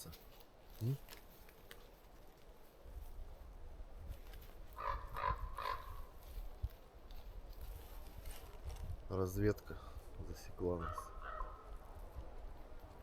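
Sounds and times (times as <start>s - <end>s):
bird honking calls: 4.8s - 6.1s.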